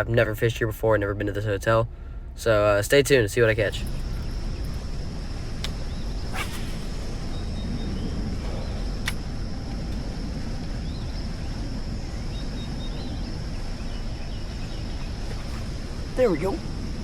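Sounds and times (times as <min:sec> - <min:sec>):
constant high-pitched tone: 0:00.0 - 0:17.0
steady low rumble: 0:00.0 - 0:17.0
faint bird chirps: 0:03.8 - 0:16.7
sharp click: 0:05.6 - 0:05.8, 0:09.0 - 0:09.3.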